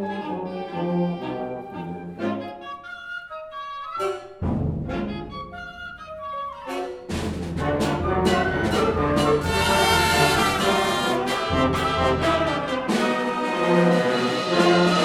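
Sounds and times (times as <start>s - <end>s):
brass instruments: 0.0s - 15.0s
concert band playing: 7.1s - 15.0s.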